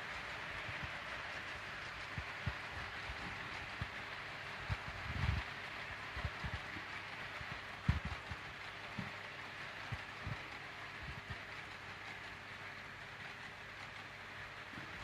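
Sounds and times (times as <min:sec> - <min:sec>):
freight train running on track: 0:00.0 - 0:15.0.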